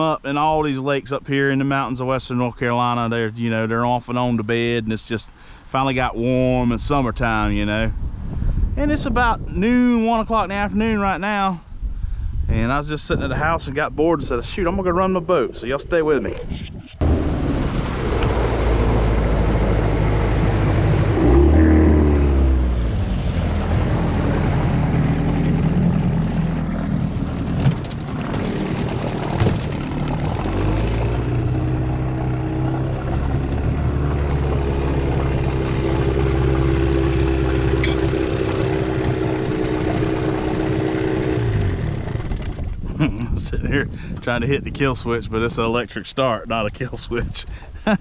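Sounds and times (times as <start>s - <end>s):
outboard motor running: 17.0s - 43.0s.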